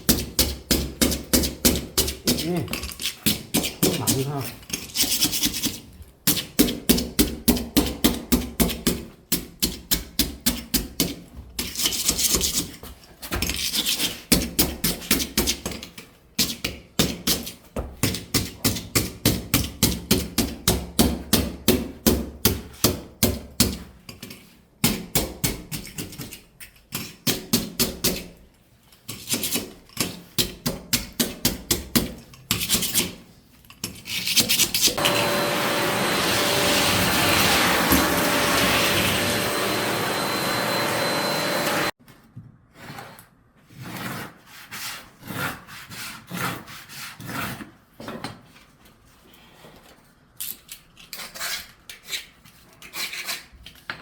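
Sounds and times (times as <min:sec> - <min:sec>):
scraping on flooring: 0:35.0 - 0:50.1.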